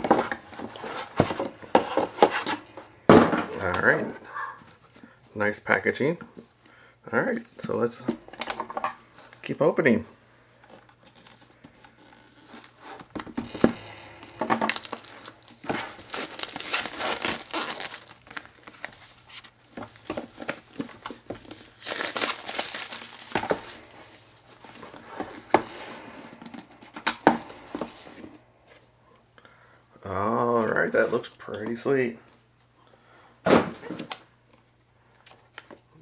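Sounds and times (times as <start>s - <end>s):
packaging crinkling and rustling: 10.6s - 28.4s.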